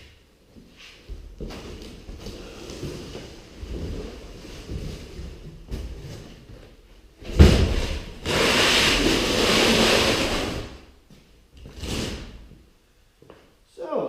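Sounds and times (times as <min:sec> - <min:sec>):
cardboard box thump: 0:07.3 - 0:07.9
cardboard sliding scrape: 0:07.7 - 0:10.8.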